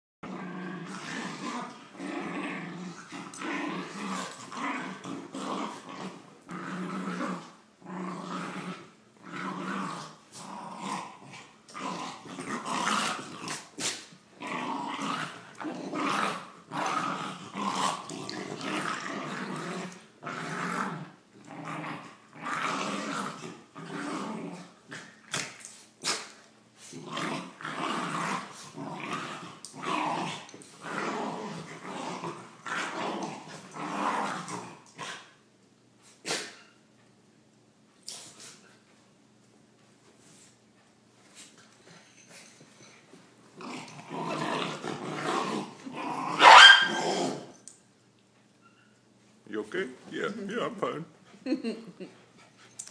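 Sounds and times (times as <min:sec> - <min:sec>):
dogs growling: 0:00.2 - 0:35.4, 0:43.6 - 0:47.7.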